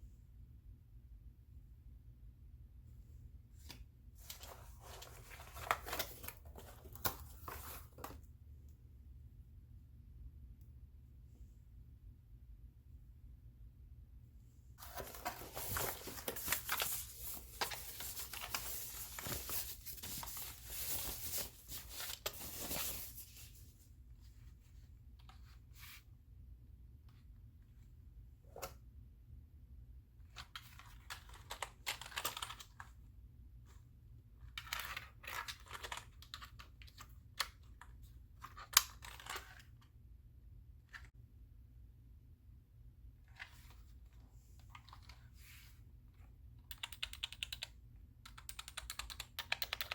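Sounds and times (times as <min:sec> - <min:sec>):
packaging rustles and clicks: 0:04.2 - 0:08.2, 0:14.8 - 0:23.4.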